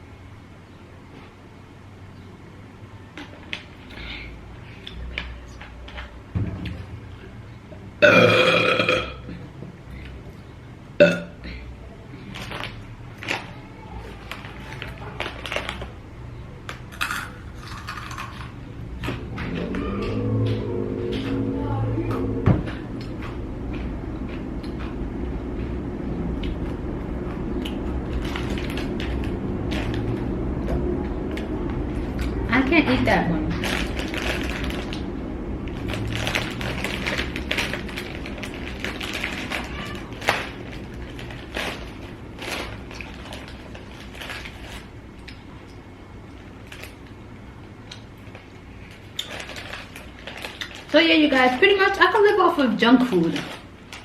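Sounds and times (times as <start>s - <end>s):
low hum: 15.5s - 50.9s.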